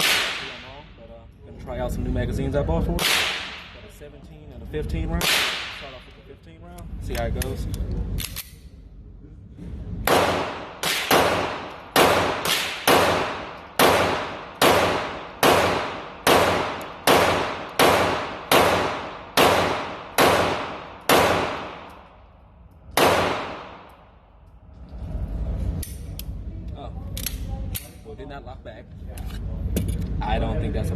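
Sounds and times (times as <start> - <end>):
pistol shots with echo: 0.0 - 0.7, 3.0 - 3.8, 5.2 - 6.0, 10.0 - 22.0, 22.9 - 23.9.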